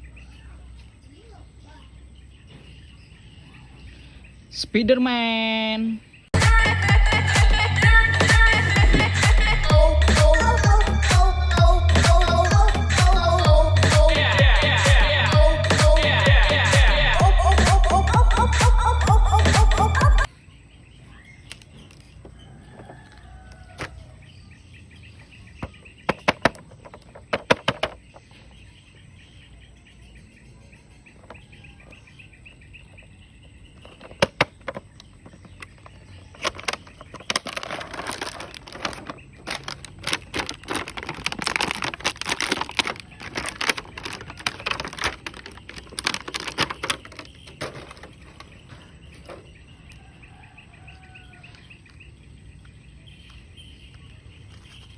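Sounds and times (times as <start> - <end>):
plastic packaging crinkling and clicking: 21.4 - 24.0, 25.6 - 28.1, 33.8 - 50.0.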